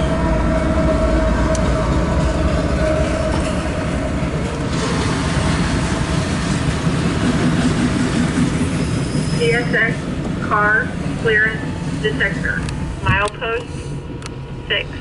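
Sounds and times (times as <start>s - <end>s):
freight train rolling past: 0.0s - 15.0s.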